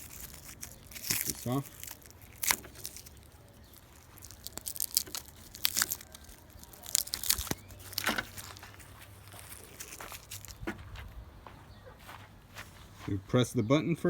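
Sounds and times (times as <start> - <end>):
packaging tearing and crinkling: 0.0 - 10.6.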